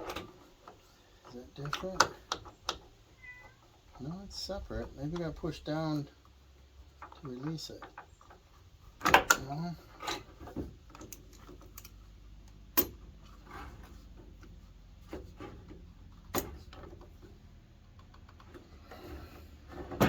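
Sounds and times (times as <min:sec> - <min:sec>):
hand tools clicking and knocking: 0:00.0 - 0:02.9, 0:09.0 - 0:13.0.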